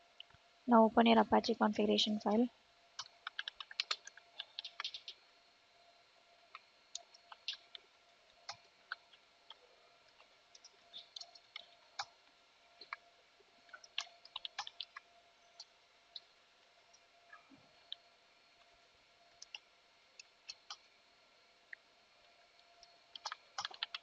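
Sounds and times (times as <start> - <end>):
keyboard typing: 3.0 - 5.2, 13.7 - 15.0, 23.1 - 24.0.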